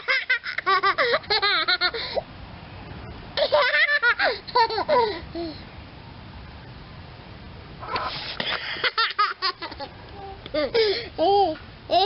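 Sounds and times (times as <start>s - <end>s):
baby squealing and laughing: 7.8s - 8.3s.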